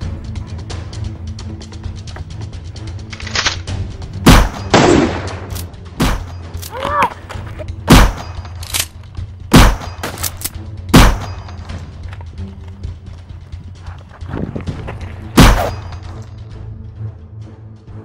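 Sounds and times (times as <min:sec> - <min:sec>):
loud gunshots: 0:09.5 - 0:09.9, 0:10.9 - 0:11.4.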